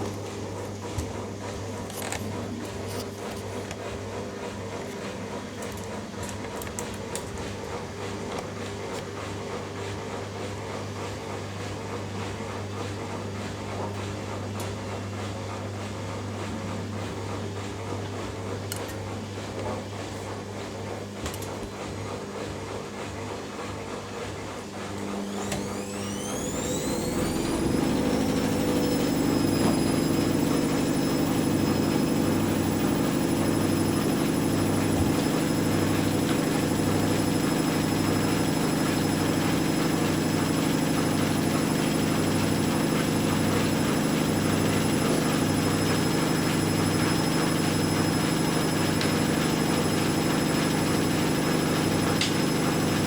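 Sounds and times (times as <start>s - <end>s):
washing machines humming: 0.0s - 53.0s
rising motor whine: 25.1s - 53.0s.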